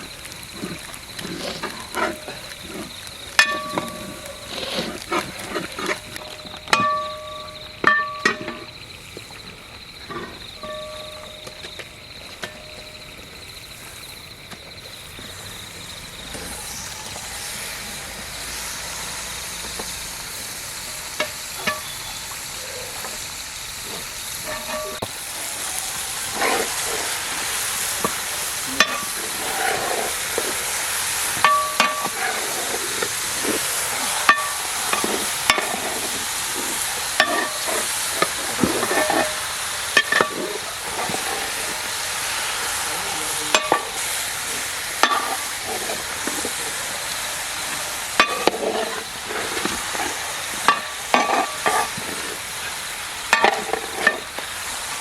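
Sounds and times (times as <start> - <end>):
food sizzling in oil: 0.0 - 55.0
metal spoon scraping a pan: 0.5 - 8.7, 23.9 - 25.1, 26.3 - 27.1, 28.0 - 41.8, 43.5 - 44.2, 45.0 - 46.8, 48.2 - 52.4, 53.3 - 54.4.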